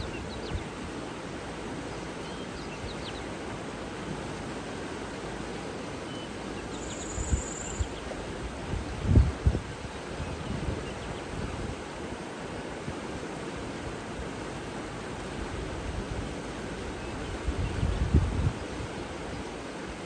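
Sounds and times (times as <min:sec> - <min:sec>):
rushing water: 0:00.0 - 0:20.0
faint bird chirps: 0:06.1 - 0:08.1
wind buffeting microphone: 0:07.2 - 0:11.9, 0:17.2 - 0:19.0.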